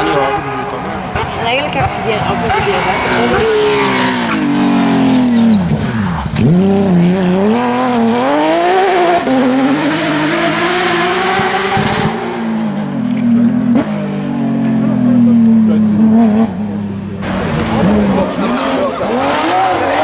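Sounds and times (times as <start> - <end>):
rally car engine revving: 0.0 - 20.0
high squeals: 0.1 - 6.2.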